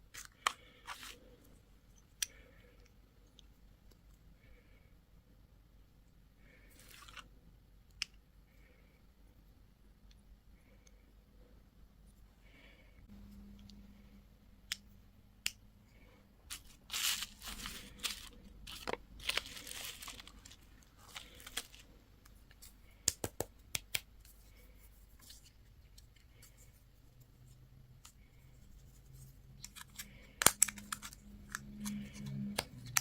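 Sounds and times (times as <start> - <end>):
packaging ripping: 16.5 - 21.8
packaging crinkling: 16.5 - 21.9.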